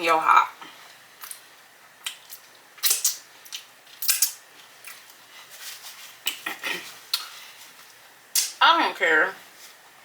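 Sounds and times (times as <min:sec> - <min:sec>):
wet mouth clicks and smacks: 0:01.2 - 0:01.4, 0:02.0 - 0:05.0.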